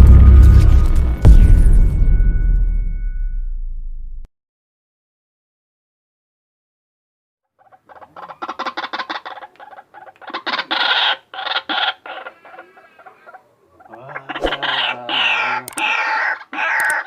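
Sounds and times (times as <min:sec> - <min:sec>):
waterhen harsh calls: 0:07.6 - 0:17.0.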